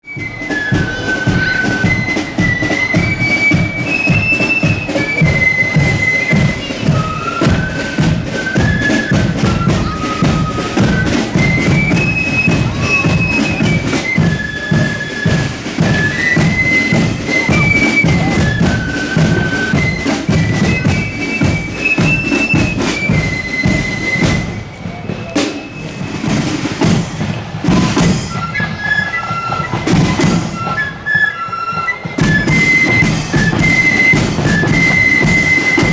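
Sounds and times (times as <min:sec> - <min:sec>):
flute melody: 0:00.0 - 0:35.9
heavy drumming: 0:00.0 - 0:35.9.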